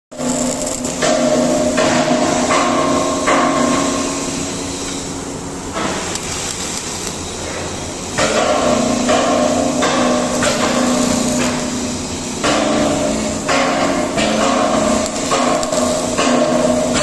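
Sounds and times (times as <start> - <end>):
factory machinery humming: 0.1 - 17.0
machinery knocks: 0.9 - 4.1, 7.5 - 17.0.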